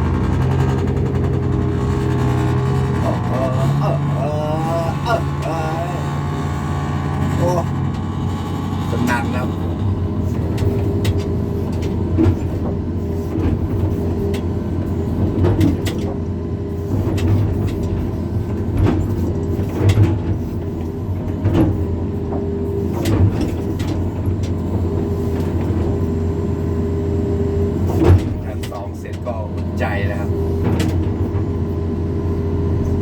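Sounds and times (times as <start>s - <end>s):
knocks and clanks: 0.0s - 14.4s
excavator engine running: 0.0s - 33.0s.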